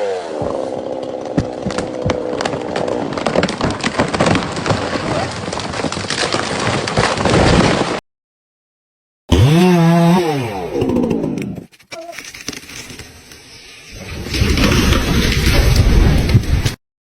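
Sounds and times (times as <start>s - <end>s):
wood cracking and snapping: 0.3s - 8.0s, 10.8s - 13.2s, 14.1s - 16.8s.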